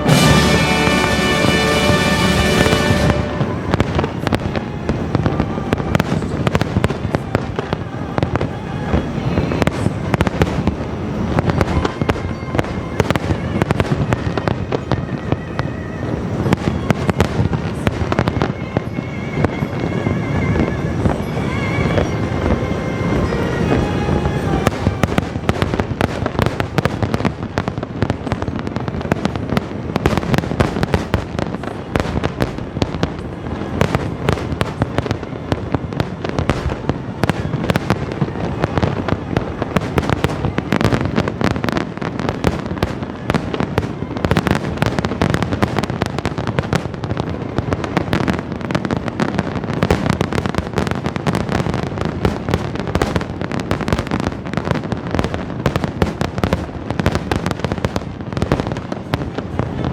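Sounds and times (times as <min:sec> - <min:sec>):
fireworks shells bursting: 0:00.0 - 0:07.3.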